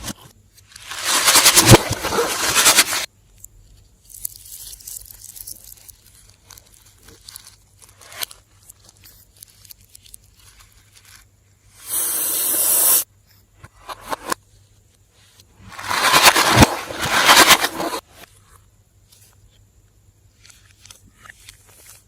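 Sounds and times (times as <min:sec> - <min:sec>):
loud steady hiss: 0:11.7 - 0:13.1.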